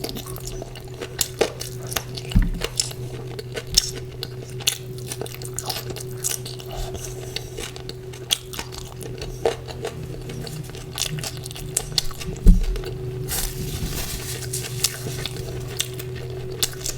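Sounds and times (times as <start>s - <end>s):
wet chewing and smacking: 0.0s - 13.6s, 14.5s - 16.9s
steady low hum: 0.0s - 16.9s.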